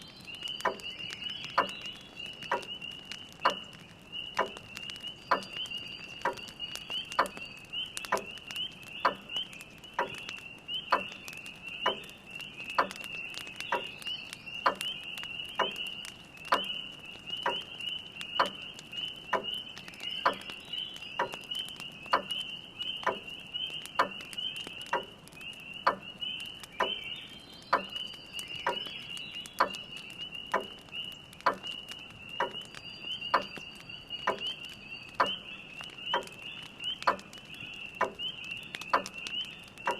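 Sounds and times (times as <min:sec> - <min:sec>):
spring peepers calling: 0:00.0 - 0:39.9.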